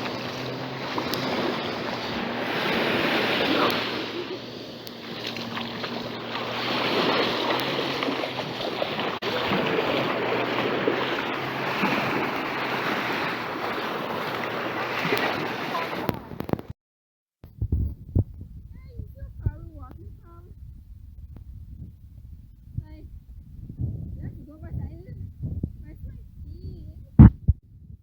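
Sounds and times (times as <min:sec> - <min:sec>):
ocean surf washing: 0:00.0 - 0:16.7
wind buffeting microphone: 0:00.0 - 0:16.7, 0:17.5 - 0:28.0
low steady hum: 0:17.6 - 0:27.4.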